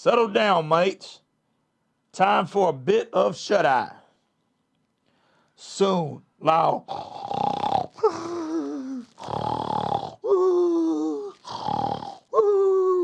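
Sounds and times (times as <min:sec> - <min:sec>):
man imitating snoring: 0:06.8 - 0:12.6.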